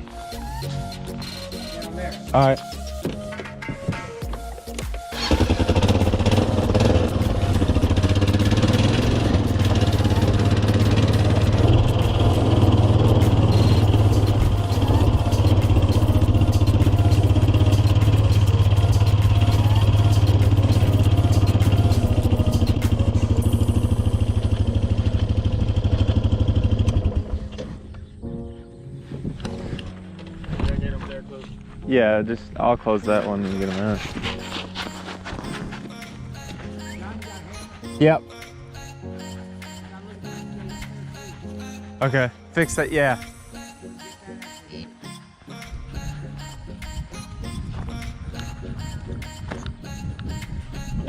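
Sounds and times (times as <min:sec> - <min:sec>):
vehicle engine droning: 0:05.2 - 0:28.0.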